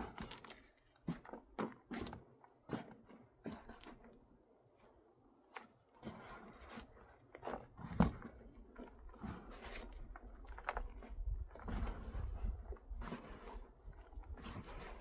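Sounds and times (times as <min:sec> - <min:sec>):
soil rustling and scraping: 0:09.6 - 0:15.0.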